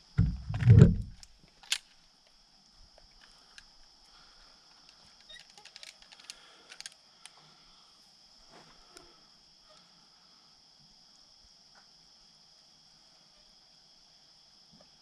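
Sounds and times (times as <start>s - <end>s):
low bumping rumble: 0.0s - 1.2s
night insects trilling: 1.1s - 15.0s
faint ticks: 1.2s - 7.5s.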